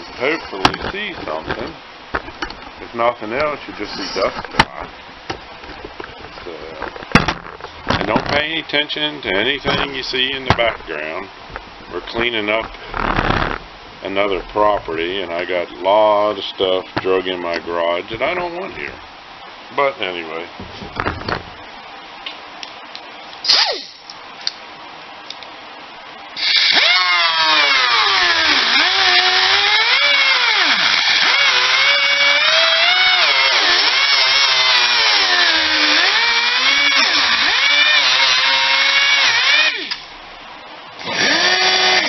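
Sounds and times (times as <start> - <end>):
cutoff wheel cutting fiberglass: 26.4 - 40.1.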